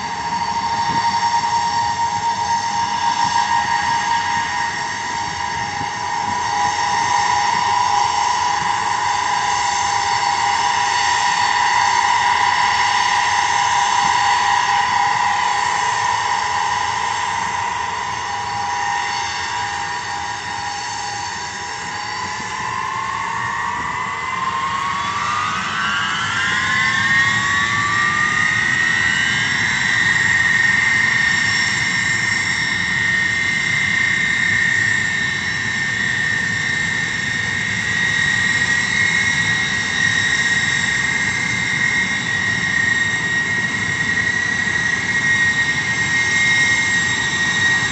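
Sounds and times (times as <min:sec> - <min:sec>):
jet engines whining: 0:00.0 - 0:47.9.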